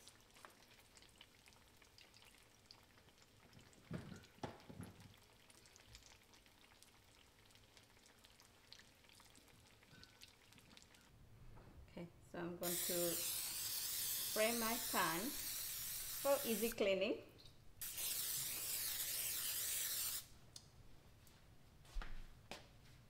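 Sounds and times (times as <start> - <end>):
food crackling in a pan: 0.0 - 11.2, 12.6 - 16.7.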